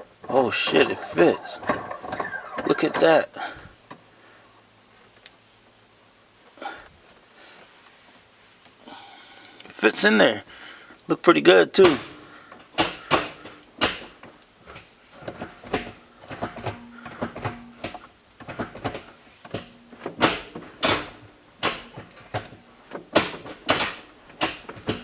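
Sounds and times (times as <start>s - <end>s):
gear lever clicking and clunking: 0.0s - 3.3s, 11.8s - 25.0s.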